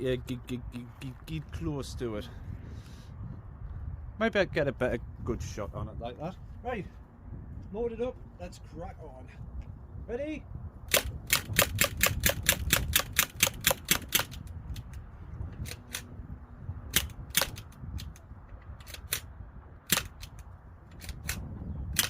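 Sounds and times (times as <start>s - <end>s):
bb gun firing sharp cracks: 10.9s - 14.5s, 16.9s - 17.7s, 18.8s - 20.4s.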